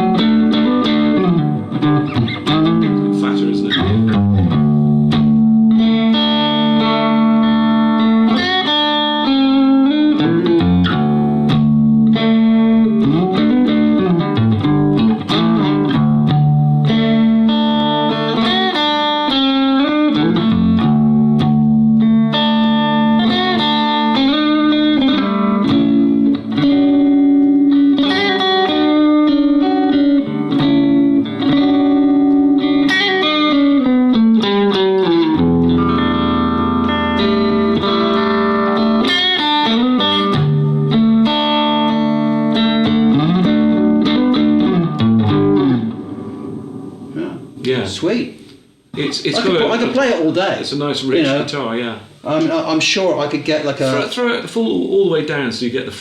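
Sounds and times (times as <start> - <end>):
electric guitar riff: 0.0 - 50.4.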